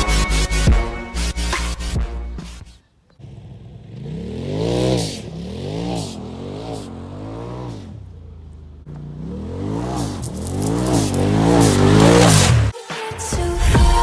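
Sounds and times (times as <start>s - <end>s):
engine revving: 3.1s - 12.7s.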